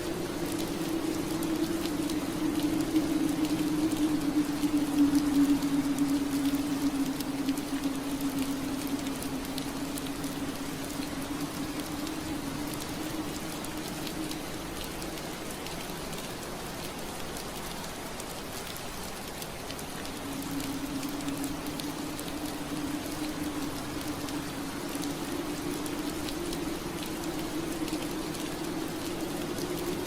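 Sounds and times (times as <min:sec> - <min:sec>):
rain on a window pane: 0:00.0 - 0:30.0.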